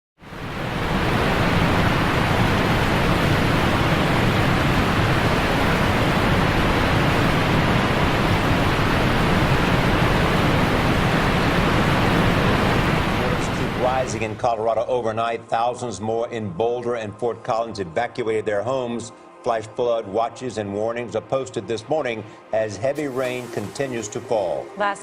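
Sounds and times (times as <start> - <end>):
floodwater rushing: 0.3 - 14.5, 21.9 - 24.9.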